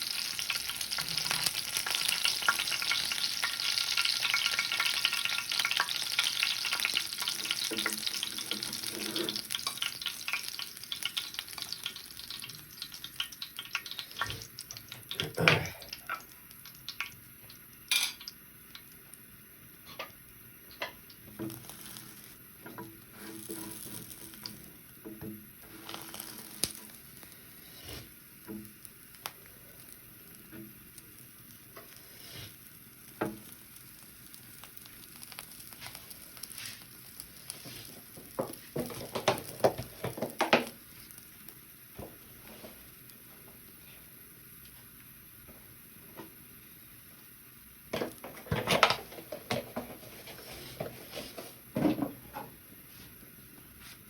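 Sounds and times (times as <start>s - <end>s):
food sizzling in a pan: 0.0s - 54.0s.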